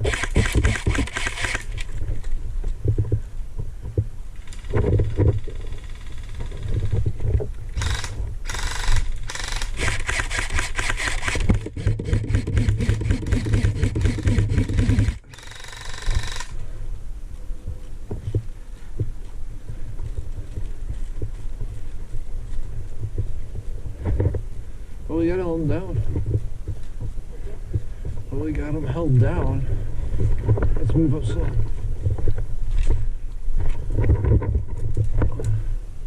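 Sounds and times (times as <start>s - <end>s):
rapid airsoft gunfire: 0.0s - 1.7s, 7.8s - 16.6s.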